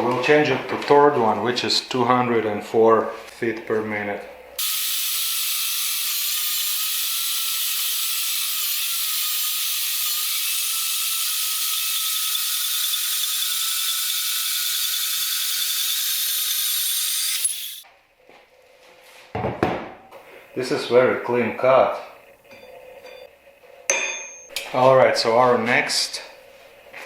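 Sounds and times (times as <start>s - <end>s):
bandsaw cutting steel: 4.6s - 17.8s.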